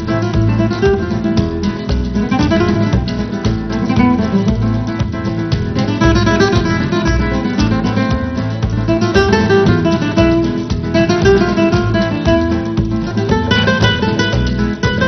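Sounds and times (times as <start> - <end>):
steady low beat: 0.0 - 15.0
strummed acoustic guitar: 0.0 - 15.0.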